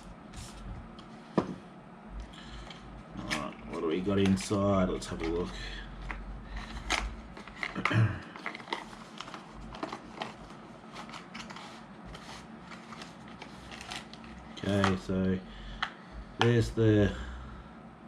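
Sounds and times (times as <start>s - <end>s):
packaging rustling: 3.2s - 15.0s.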